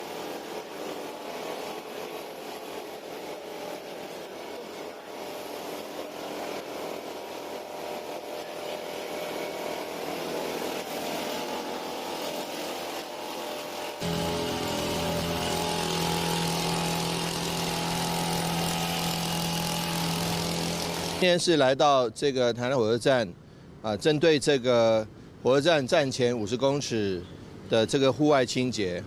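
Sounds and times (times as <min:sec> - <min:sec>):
small engine running: 0:00.0 - 0:21.2.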